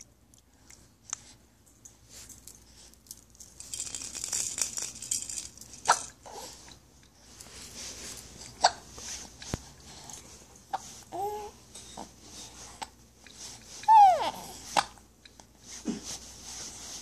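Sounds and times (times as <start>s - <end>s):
rattling shaking noise: 2.1s - 6.1s.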